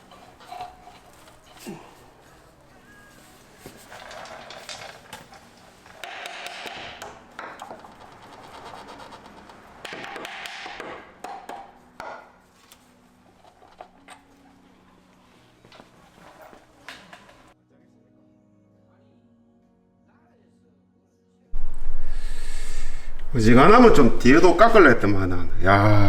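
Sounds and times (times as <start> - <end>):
tools and metal parts clanking: 3.1 - 9.6.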